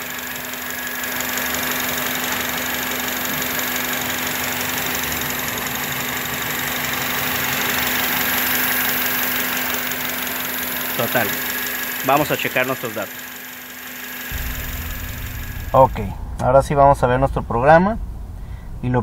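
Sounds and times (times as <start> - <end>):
car engine idling with misfire: 0.0 - 16.7
steady hiss: 14.3 - 19.0.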